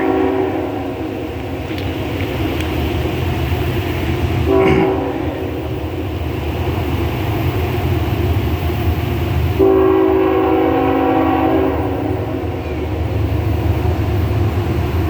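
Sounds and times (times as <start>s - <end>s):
locomotive air horn: 0.0s - 1.0s, 4.4s - 5.6s, 9.6s - 12.4s
train low rumble: 0.0s - 15.0s.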